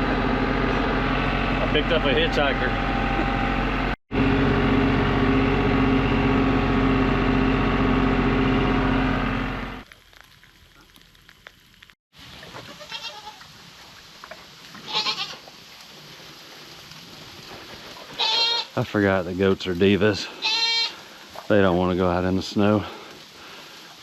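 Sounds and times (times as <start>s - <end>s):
engine running: 0.0s - 9.9s
goats bleating: 12.6s - 13.4s, 14.8s - 15.4s, 18.1s - 18.8s, 20.2s - 21.0s.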